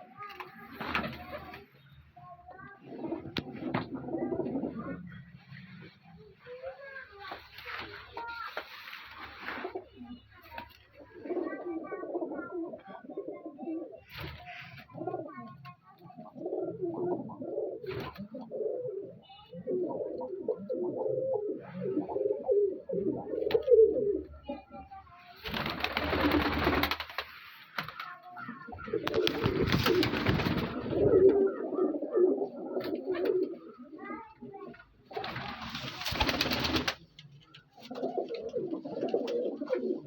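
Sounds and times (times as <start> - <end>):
pigeons cooing: 2.5 - 5.9, 10.9 - 24.8, 27.9 - 40.0.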